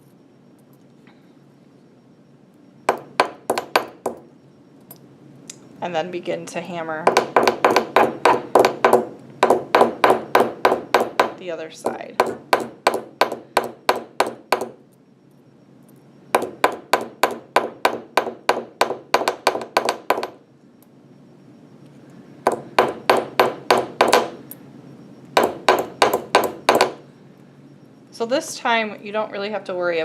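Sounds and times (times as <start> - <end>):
hammer striking rivet on anvil: 2.9 - 4.2, 7.1 - 11.4, 12.2 - 14.8, 16.4 - 20.4, 22.5 - 24.4, 25.4 - 27.0.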